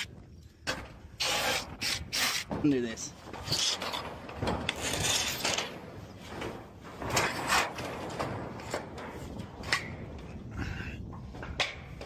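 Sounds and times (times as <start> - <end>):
roofing materials scraping: 1.1 - 10.4.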